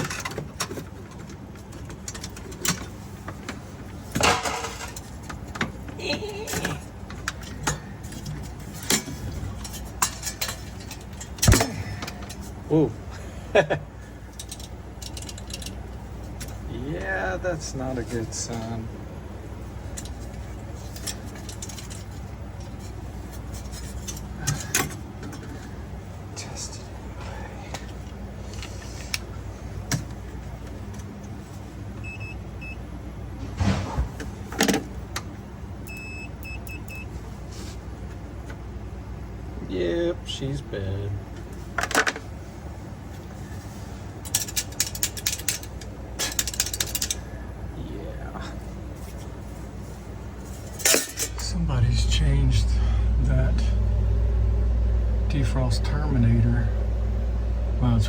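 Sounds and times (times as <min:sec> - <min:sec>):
steady low hum: 0:00.0 - 0:58.0
tools clicking and tapping: 0:44.3 - 0:47.2.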